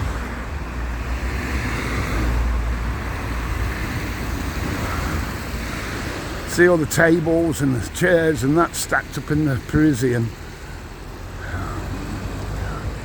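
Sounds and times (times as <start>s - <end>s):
wind rumbling on microphone: 0.0s - 8.2s
road traffic: 0.0s - 13.0s.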